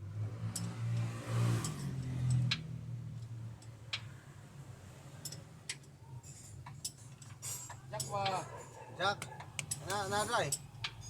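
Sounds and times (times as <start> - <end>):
metal tools clicking and tapping: 0.5 - 2.6, 5.2 - 11.0.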